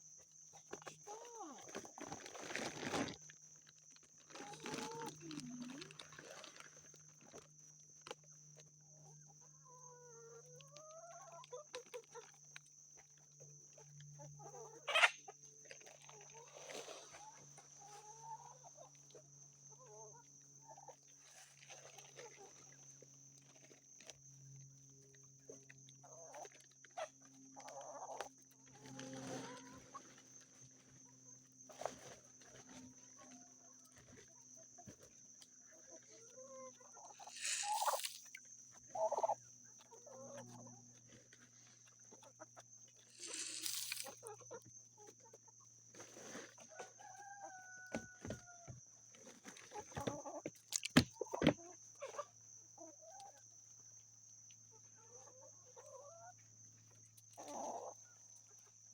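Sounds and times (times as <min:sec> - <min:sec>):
chickens clucking: 0:09.1 - 0:12.5, 0:14.2 - 0:15.6, 0:35.7 - 0:40.8, 0:49.7 - 0:53.4, 0:54.7 - 0:58.2
chickens squawking: 0:14.6 - 0:15.2, 0:37.1 - 0:38.2.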